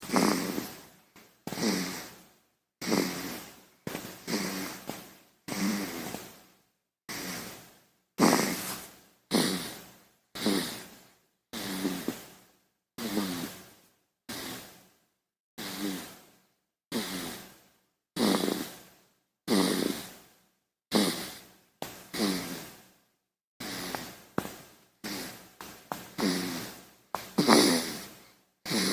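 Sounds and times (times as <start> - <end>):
baby snoring: 0.0 - 0.9, 1.5 - 2.2, 2.8 - 6.4, 7.1 - 12.3, 13.0 - 13.7, 14.3 - 14.8, 15.6 - 16.2, 16.9 - 17.6, 18.2 - 18.9, 19.5 - 20.2, 20.9 - 21.5, 22.1 - 22.8, 23.6 - 24.2, 25.0 - 28.9.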